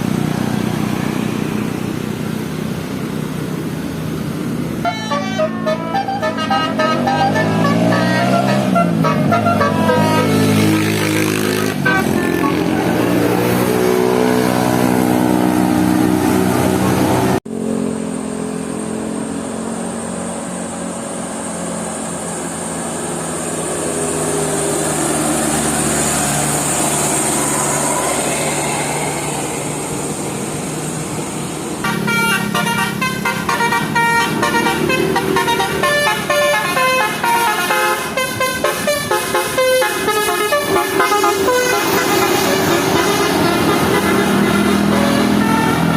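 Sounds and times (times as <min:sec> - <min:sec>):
multi-tone bus horn: 0:04.8 - 0:17.4, 0:31.8 - 0:45.9.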